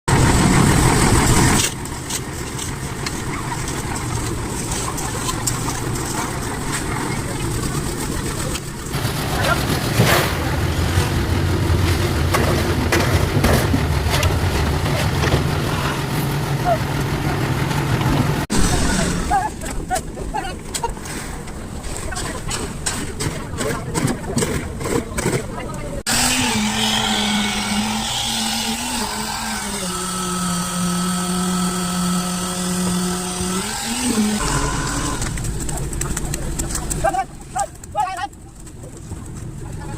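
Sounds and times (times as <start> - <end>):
sharp knocks and scrapes: 20.7 - 29.3
small motor whining: 26.1 - 35.5
engine humming: 26.7 - 39.9.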